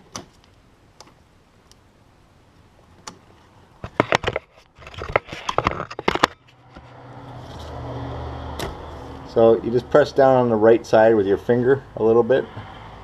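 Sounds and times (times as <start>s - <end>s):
plastic clicks and scrapes: 3.8s - 6.5s.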